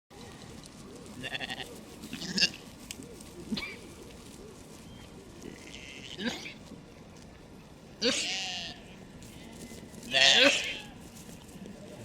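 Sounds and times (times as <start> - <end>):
sheep bleating: 1.2 - 2.6, 5.5 - 6.5, 8.0 - 8.8, 10.1 - 11.0.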